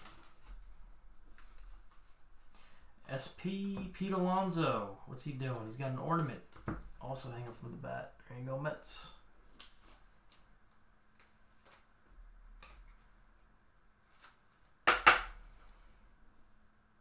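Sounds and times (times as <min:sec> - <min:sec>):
trading cards being handled: 0:09.5 - 0:11.9.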